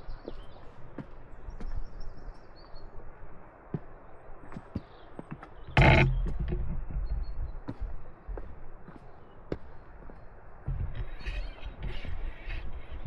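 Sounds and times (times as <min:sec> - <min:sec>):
footsteps on rocky path: 0:00.0 - 0:02.8, 0:03.7 - 0:13.0
loud burst of noise: 0:05.8 - 0:06.7
faint high bird chirps: 0:10.8 - 0:13.0.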